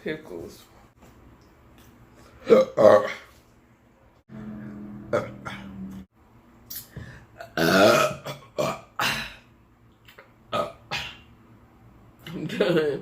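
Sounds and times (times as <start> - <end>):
person burping: 2.4 - 3.3, 4.4 - 6.0, 7.4 - 9.5, 10.5 - 11.3.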